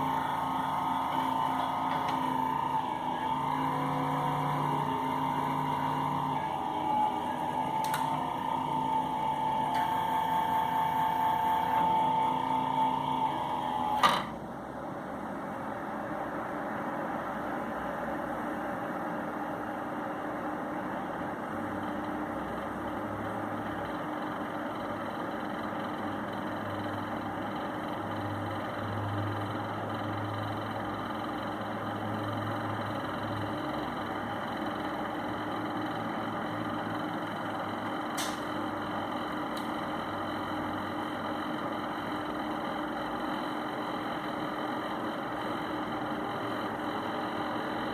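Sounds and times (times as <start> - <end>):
power supply high whine: 0.0 - 47.9
sharp click: 38.2 - 38.5.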